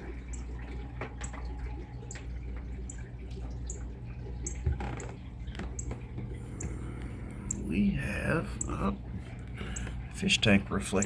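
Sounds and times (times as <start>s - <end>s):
aquarium filter hum: 0.0s - 11.0s
water trickling and dripping: 0.0s - 11.0s.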